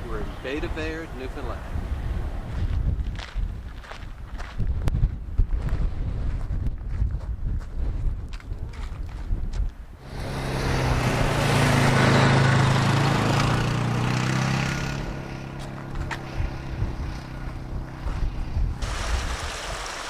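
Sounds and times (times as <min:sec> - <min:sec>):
engine passing by: 0:10.0 - 0:20.0.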